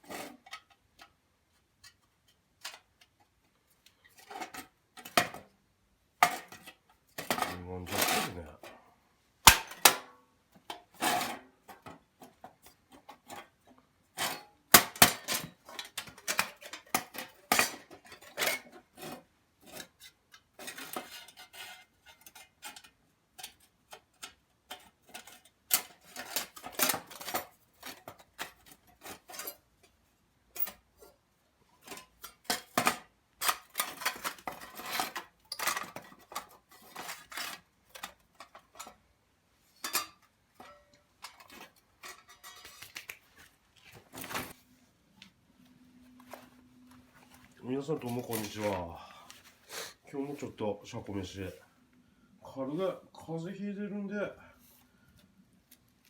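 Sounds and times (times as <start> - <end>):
metal utensils scraping: 6.3 - 8.7, 31.8 - 39.0, 39.7 - 43.2, 47.8 - 49.0
metal cookware clinking: 39.8 - 43.1.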